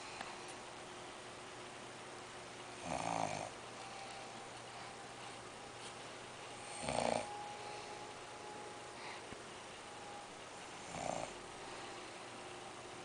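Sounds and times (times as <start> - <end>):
man snoring: 2.8 - 3.5, 6.7 - 7.4, 10.9 - 11.4
faint breath: 8.9 - 9.4, 11.6 - 12.4.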